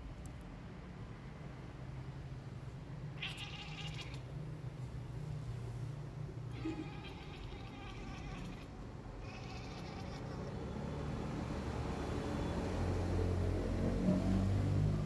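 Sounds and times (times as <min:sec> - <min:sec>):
cat meowing: 0:03.2 - 0:04.3, 0:06.5 - 0:10.7.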